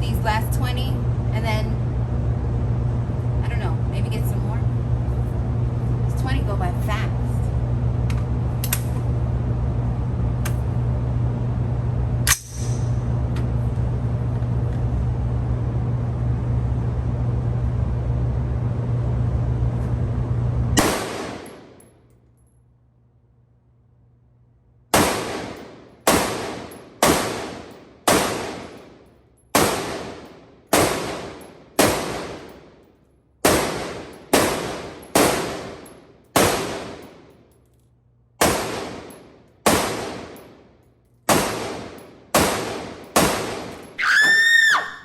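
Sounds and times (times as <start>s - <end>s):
rifle shots with echo: 20.8s - 21.8s, 24.9s - 32.7s, 33.4s - 37.3s, 38.4s - 40.6s, 41.3s - 43.8s.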